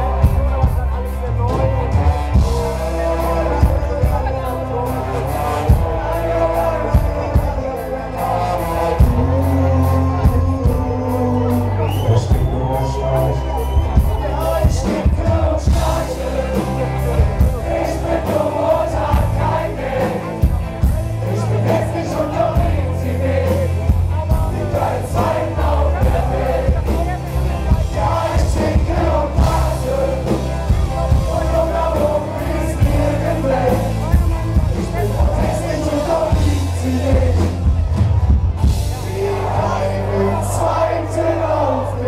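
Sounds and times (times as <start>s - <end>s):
person singing: 0.0s - 13.4s
live ska-punk band playing: 0.0s - 42.0s
drum beat: 13.8s - 39.0s.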